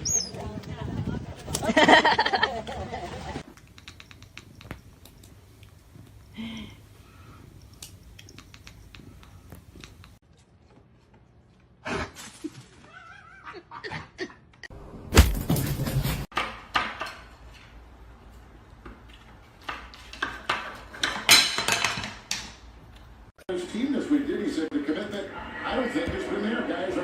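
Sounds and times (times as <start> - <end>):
knocks and clattering: 19.6 - 22.7.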